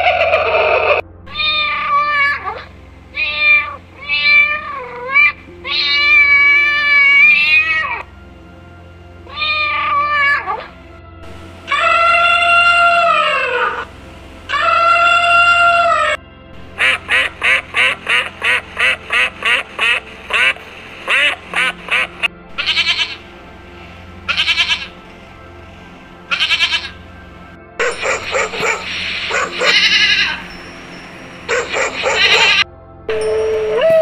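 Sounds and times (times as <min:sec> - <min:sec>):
background music: 0:00.0 - 0:34.0
ducks quacking: 0:16.8 - 0:23.3, 0:24.3 - 0:25.0, 0:26.3 - 0:27.0, 0:27.8 - 0:30.4, 0:31.5 - 0:32.6.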